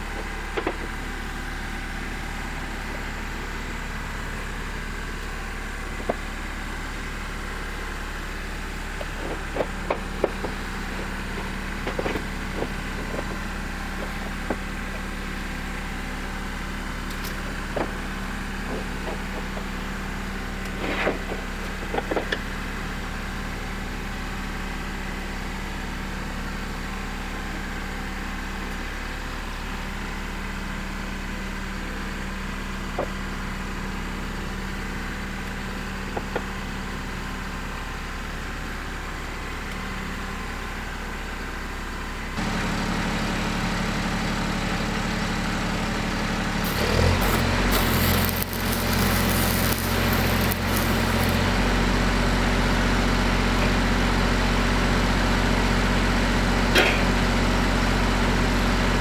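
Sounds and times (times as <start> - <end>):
engine running: 46.6 - 51.5.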